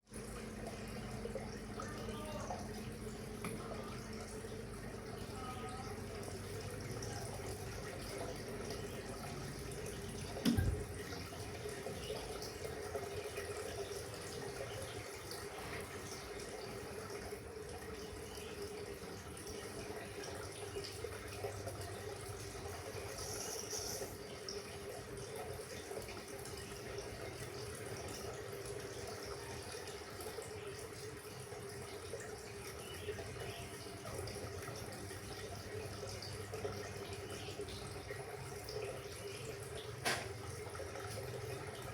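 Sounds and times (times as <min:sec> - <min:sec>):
faint hum: 0:00.1 - 0:25.5.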